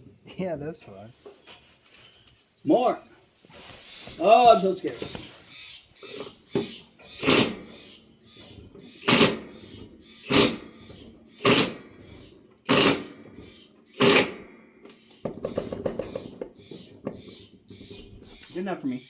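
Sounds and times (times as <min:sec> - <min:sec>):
loud strikes on mower wheel: 0:10.3 - 0:12.0, 0:12.7 - 0:13.4, 0:14.0 - 0:14.6.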